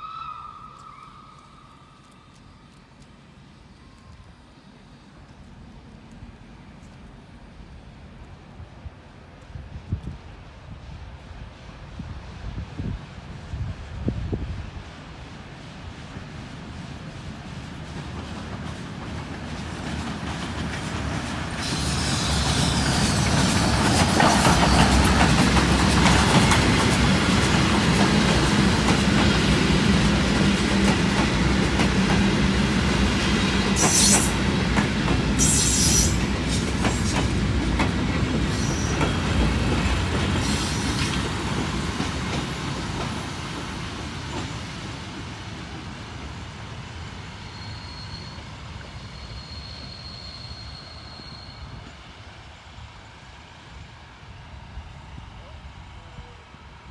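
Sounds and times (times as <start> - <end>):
train passing on rails: 0.0 - 56.9
high wheel squeals: 21.6 - 23.6, 33.8 - 34.4, 35.4 - 36.3, 47.4 - 51.9.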